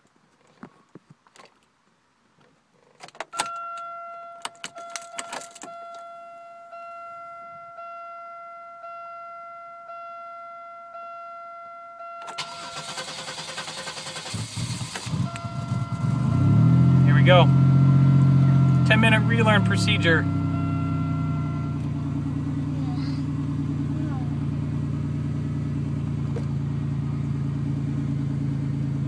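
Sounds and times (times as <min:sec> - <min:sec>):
car warning chime dinging: 0:03.3 - 0:14.3, 0:15.0 - 0:27.0
engine starting: 0:12.3 - 0:15.7.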